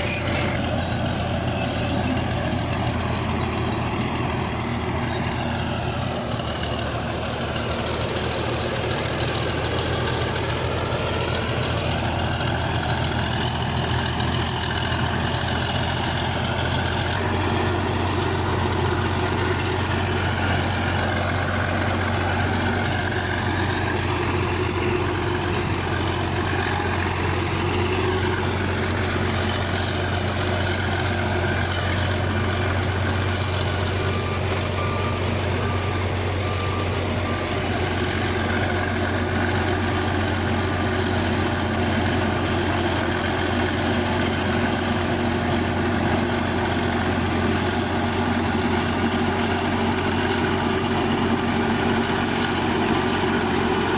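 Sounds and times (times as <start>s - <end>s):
bulldozer diesel engine running: 0.0s - 53.9s
reversing alarm beeps: 31.9s - 40.0s.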